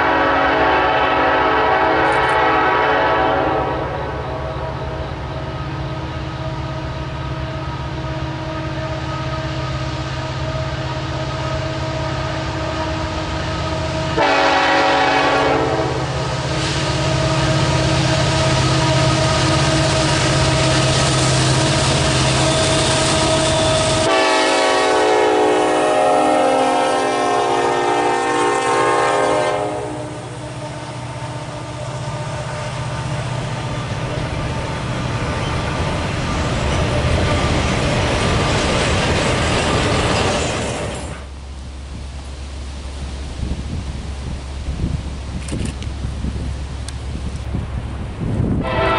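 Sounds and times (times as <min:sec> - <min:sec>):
train horn: 0:00.0 - 0:34.8, 0:48.5 - 0:48.9
train rumbling past: 0:00.0 - 0:48.9.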